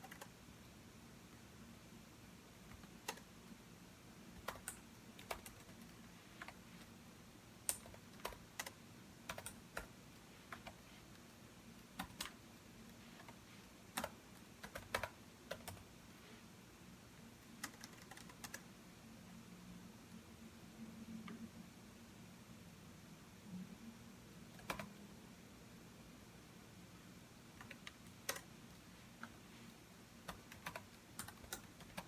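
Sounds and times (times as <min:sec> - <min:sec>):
computer keyboard typing: 0:00.0 - 0:00.4, 0:02.7 - 0:03.3, 0:04.4 - 0:06.6, 0:07.6 - 0:11.3, 0:11.9 - 0:12.4, 0:13.1 - 0:15.9, 0:17.5 - 0:18.6, 0:24.5 - 0:25.0, 0:27.5 - 0:29.4, 0:30.2 - 0:32.0.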